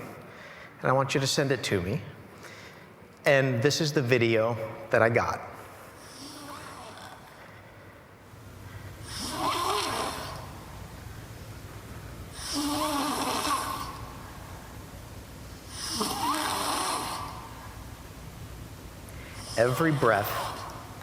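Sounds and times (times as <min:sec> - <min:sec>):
child snoring: 0:06.0 - 0:07.4, 0:09.0 - 0:10.6, 0:12.3 - 0:14.2, 0:15.7 - 0:17.6, 0:19.4 - 0:20.8.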